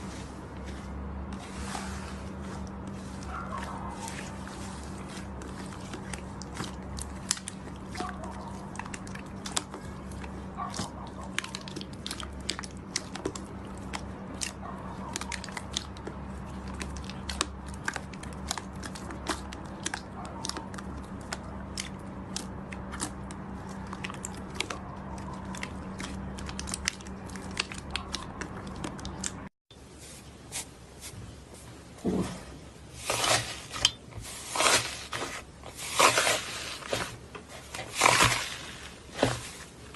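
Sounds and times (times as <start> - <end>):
slime squelches: 0.0 - 29.5, 32.0 - 39.9.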